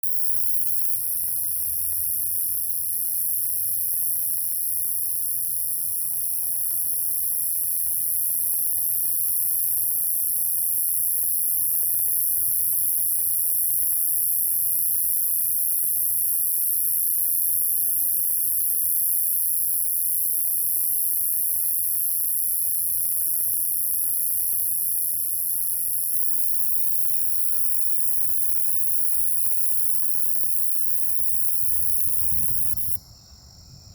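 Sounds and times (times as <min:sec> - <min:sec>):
high-pitched shrill hiss: 0:00.0 - 0:33.0
faint short calls: 0:27.1 - 0:28.4.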